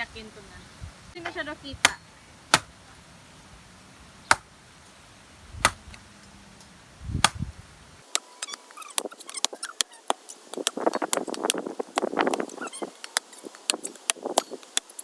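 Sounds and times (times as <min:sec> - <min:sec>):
coconut being struck: 0:01.8 - 0:02.8, 0:04.3 - 0:04.5, 0:05.6 - 0:06.0, 0:07.2 - 0:07.4.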